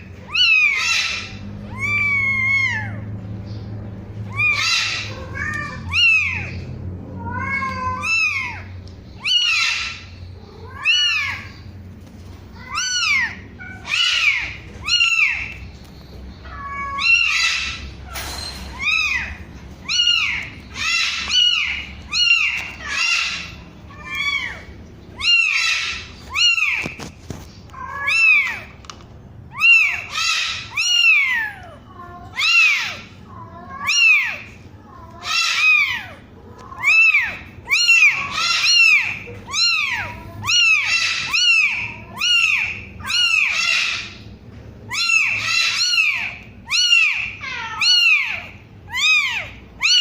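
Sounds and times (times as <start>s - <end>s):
kitten mewing: 29.5s - 44.2s.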